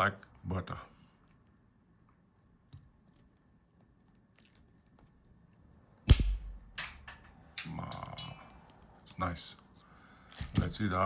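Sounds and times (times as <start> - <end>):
cutters snapping through metal: 6.1 - 8.4.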